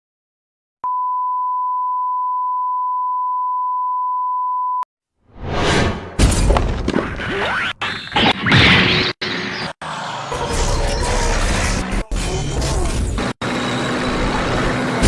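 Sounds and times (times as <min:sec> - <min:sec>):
steady electronic beep: 0:00.9 - 0:04.8.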